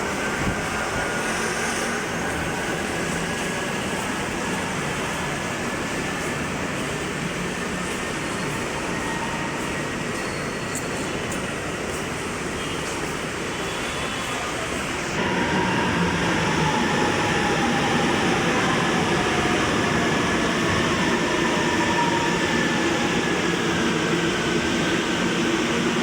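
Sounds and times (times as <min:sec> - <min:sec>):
train rumbling on track: 0:00.0 - 0:26.0.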